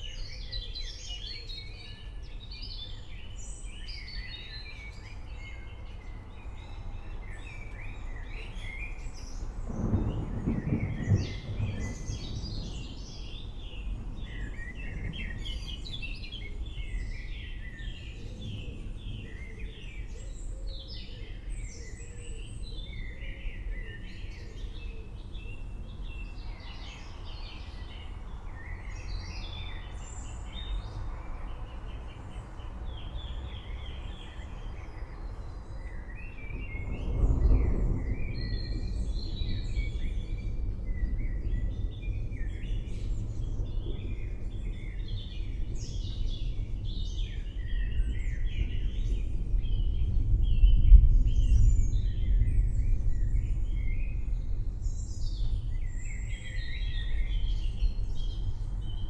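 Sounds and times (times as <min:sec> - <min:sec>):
distant thunder rumbling: 0:08.5 - 0:20.2, 0:24.6 - 0:59.0.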